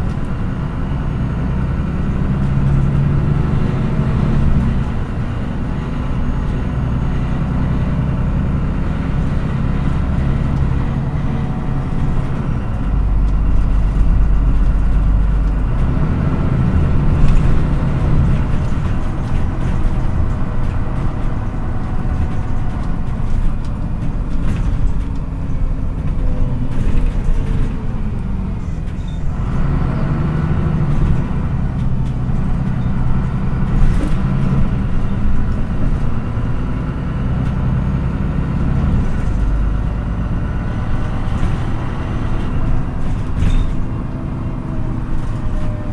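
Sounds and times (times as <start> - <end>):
bus engine rumbling: 0.0 - 45.9
clicks and knocks from bus body: 16.7 - 29.7, 30.6 - 36.7, 40.8 - 45.9.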